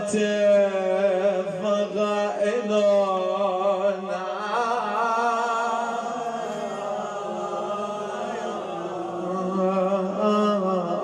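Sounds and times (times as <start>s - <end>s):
man chanting: 0.0s - 11.0s.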